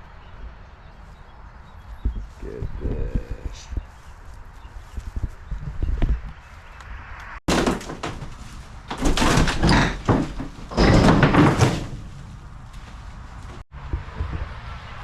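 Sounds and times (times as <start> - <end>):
wood crashing and banging: 7.5 - 13.6.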